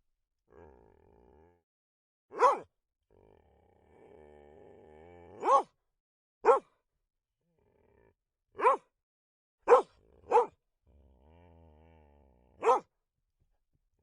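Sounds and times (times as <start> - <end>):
dog growling low: 0.5 - 1.6, 3.1 - 5.6, 7.4 - 8.2, 9.9 - 12.9
dog barking: 2.3 - 2.7, 5.4 - 5.7, 6.4 - 6.7, 8.6 - 8.9, 9.6 - 10.6, 12.6 - 12.9.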